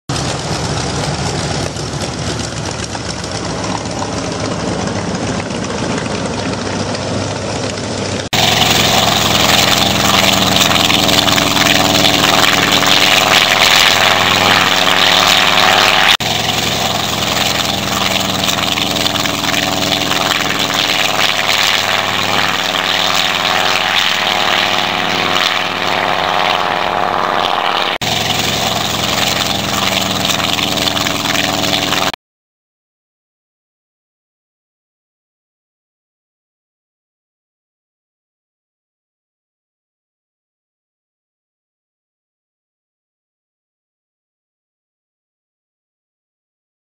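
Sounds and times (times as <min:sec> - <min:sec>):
propeller aircraft engine running: 0:00.1 - 0:32.2.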